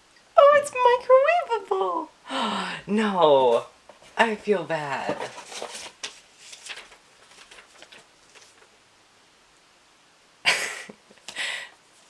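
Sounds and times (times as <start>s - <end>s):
mug and packaging handled: 4.9s - 8.6s
sharp breath noise: 11.3s - 11.8s.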